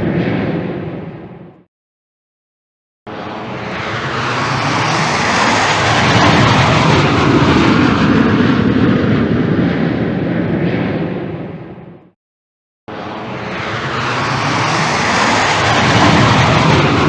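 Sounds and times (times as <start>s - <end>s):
jet engine passing: 3.1s - 12.2s, 12.9s - 17.0s.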